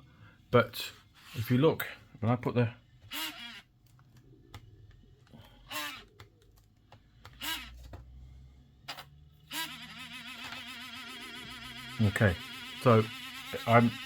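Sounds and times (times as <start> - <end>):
laptop clicks and taps: 3.8 - 5.0, 6.0 - 8.1.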